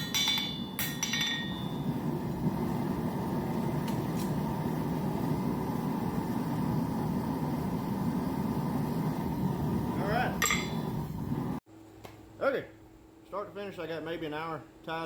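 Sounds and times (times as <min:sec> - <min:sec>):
hammer ringing on anvil: 0:00.0 - 0:01.9
shop equipment humming: 0:00.0 - 0:12.4.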